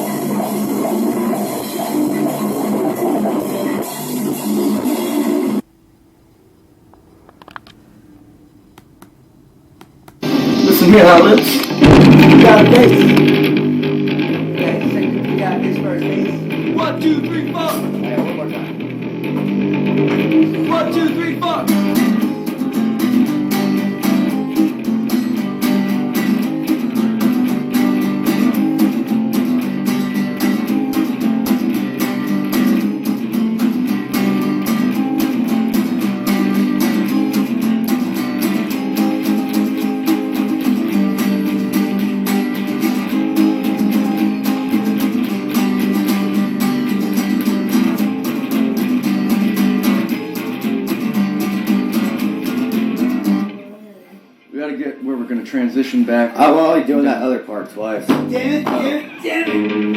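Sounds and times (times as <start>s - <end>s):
strummed guitar: 0.0s - 5.7s, 10.1s - 53.9s, 56.0s - 59.9s
band playing a song: 10.2s - 51.3s.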